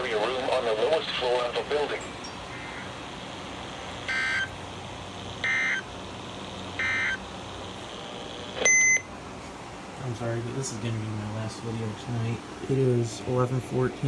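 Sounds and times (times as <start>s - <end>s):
short beep: 8.6s - 9.1s.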